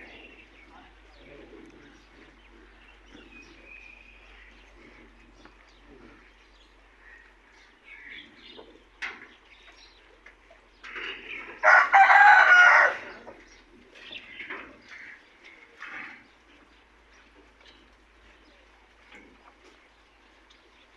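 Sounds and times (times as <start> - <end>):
rooster crowing: 11.6 - 13.3.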